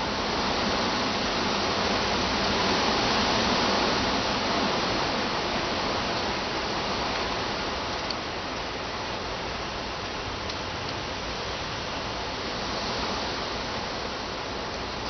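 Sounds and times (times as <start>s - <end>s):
strong wind through trees: 0.0s - 15.0s.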